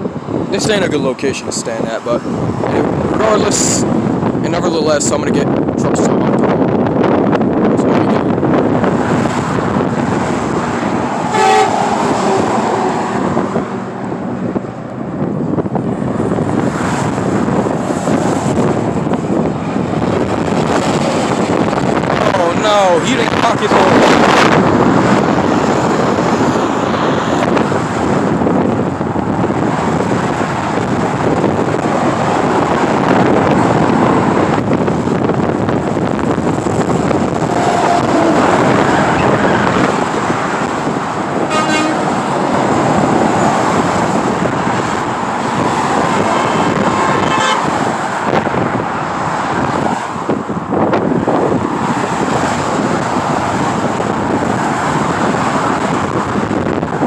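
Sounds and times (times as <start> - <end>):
highway traffic passing: 0.0 - 57.0
vehicle horn: 11.3 - 11.9, 41.5 - 42.2, 47.2 - 47.7.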